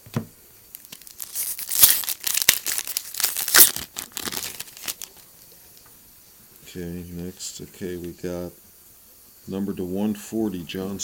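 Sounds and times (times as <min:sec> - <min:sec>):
foil wrapper crinkling: 0:00.7 - 0:05.3.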